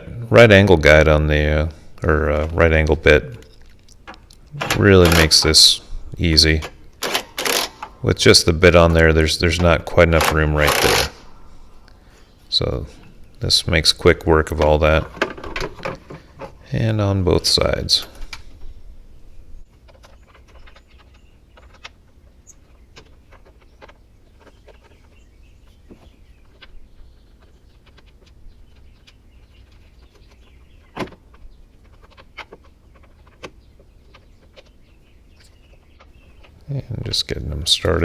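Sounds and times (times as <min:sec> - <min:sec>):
low steady hum: 0:00.0 - 0:19.8.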